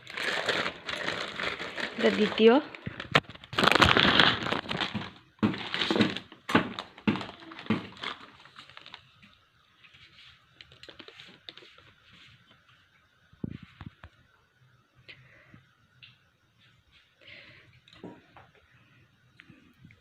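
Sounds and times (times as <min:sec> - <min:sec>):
packing material rustling: 0:00.0 - 0:09.1.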